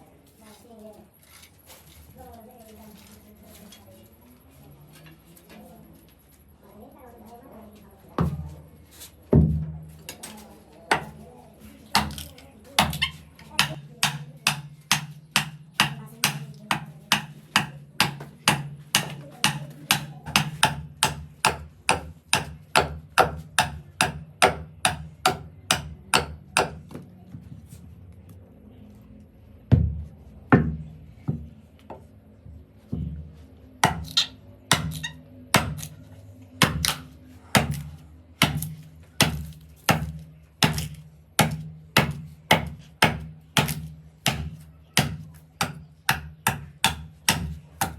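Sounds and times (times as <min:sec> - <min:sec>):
hand tool striking wood: 0:10.9 - 0:11.2, 0:12.0 - 0:27.0, 0:33.8 - 0:36.0, 0:36.6 - 0:47.9.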